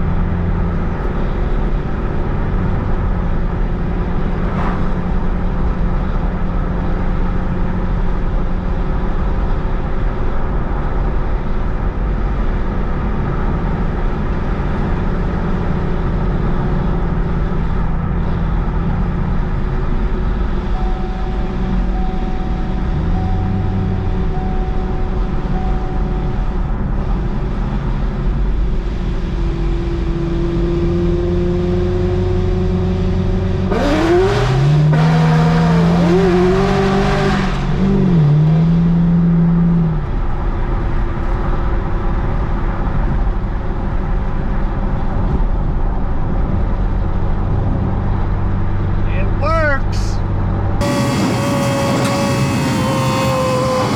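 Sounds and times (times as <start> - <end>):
car engine running and revving: 0.0 - 49.2, 50.2 - 53.9.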